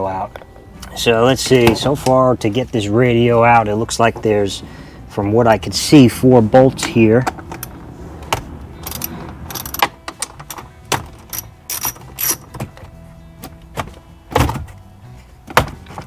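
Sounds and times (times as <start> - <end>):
hand ratchet clicking: 8.8 - 10.6, 11.3 - 12.5.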